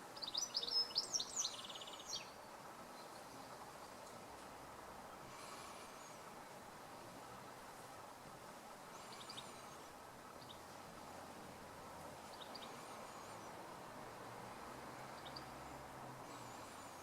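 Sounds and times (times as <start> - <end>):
small bird whistling and chirping: 0.2 - 2.4
stream water rushing: 1.0 - 17.0.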